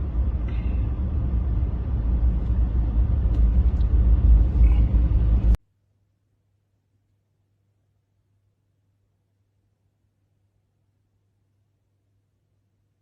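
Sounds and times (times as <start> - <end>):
loud low rumbling: 0.0 - 5.6.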